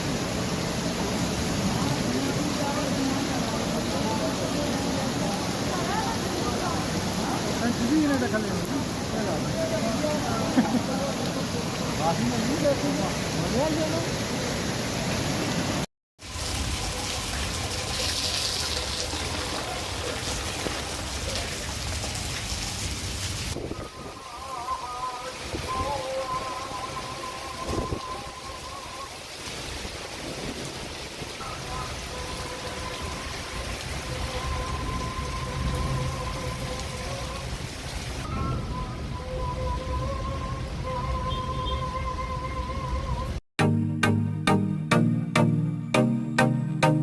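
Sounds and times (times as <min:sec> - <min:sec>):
floodwater rushing: 0:00.0 - 0:42.0
heavy rain: 0:00.0 - 0:43.4.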